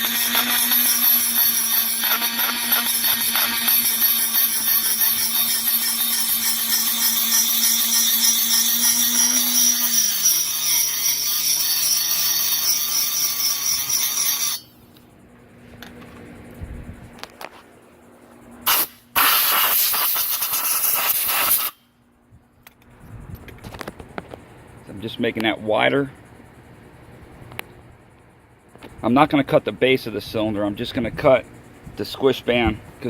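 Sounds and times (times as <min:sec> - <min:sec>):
rotary tool grinding metal: 0:00.0 - 0:14.8, 0:19.4 - 0:21.8.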